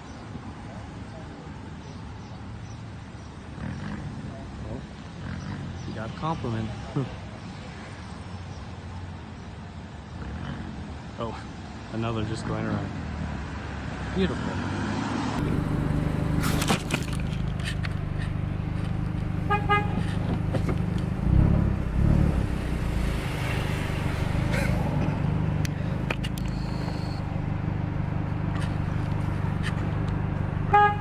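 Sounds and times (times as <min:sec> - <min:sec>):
idling car hum: 0:15.4 - 0:31.0
car horn honking: 0:19.4 - 0:20.3, 0:30.7 - 0:31.0.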